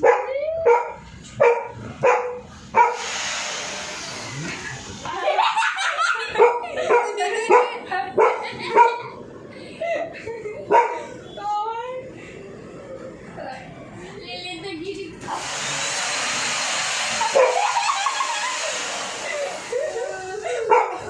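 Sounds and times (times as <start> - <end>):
dog barking: 0.0 - 3.0, 6.2 - 9.2, 10.7 - 11.1, 17.3 - 17.6, 20.7 - 21.0
electric drill whirring: 2.9 - 5.2, 15.2 - 20.5.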